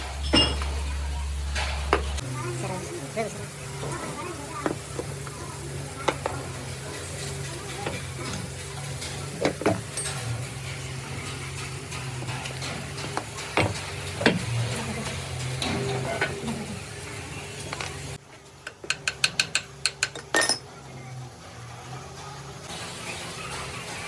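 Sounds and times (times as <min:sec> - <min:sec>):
sharp metal clinks: 0:20.1 - 0:20.6.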